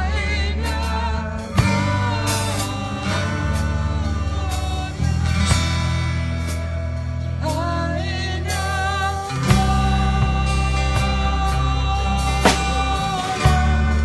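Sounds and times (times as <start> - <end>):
person singing: 0.0 - 6.0, 7.4 - 14.0
gospel song with band: 0.0 - 14.0
sustained bass notes: 0.0 - 14.0
drum hits: 12.3 - 14.0.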